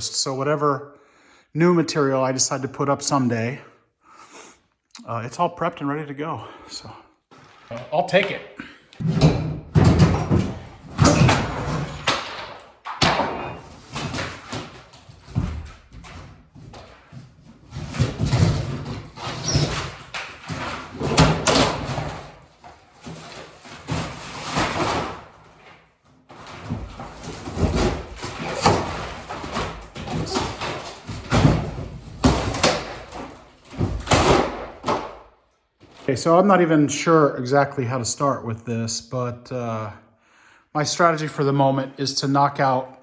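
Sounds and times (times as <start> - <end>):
wall paneling being torn off: 7.3 - 36.3.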